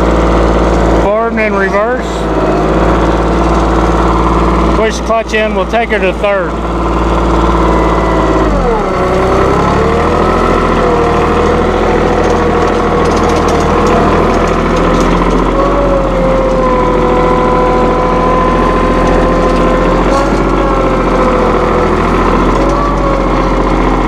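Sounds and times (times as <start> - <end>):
tractor diesel engine running: 0.0 - 24.0
whine: 0.0 - 24.0.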